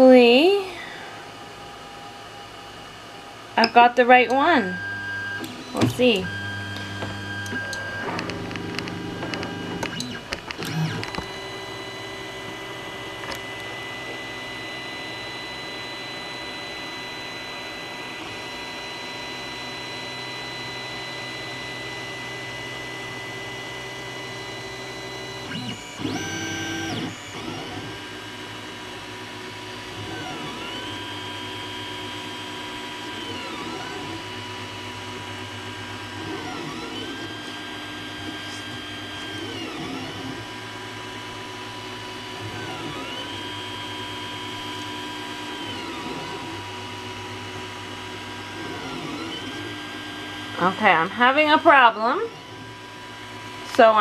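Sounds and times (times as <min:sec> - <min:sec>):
printer electric whine: 0:00.9 - 0:54.0
stepper motors whining: 0:03.6 - 0:54.0.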